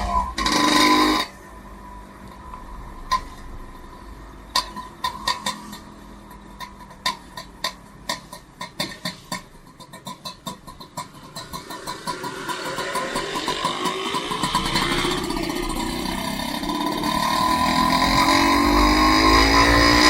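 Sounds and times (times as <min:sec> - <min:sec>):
vehicle engine speeding up: 0:11.6 - 0:20.0.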